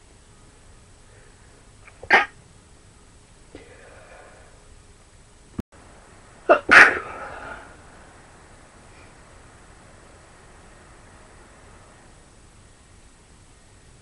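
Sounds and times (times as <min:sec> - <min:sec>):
breathy sound: 0:03.5 - 0:04.7, 0:07.0 - 0:08.0
person sneezing: 0:06.5 - 0:07.7.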